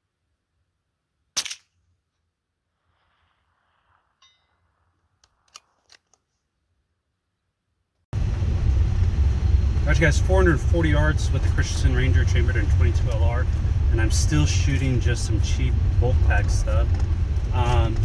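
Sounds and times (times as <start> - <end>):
rifle shot: 1.4 - 1.7
wind noise rush: 8.2 - 18.0.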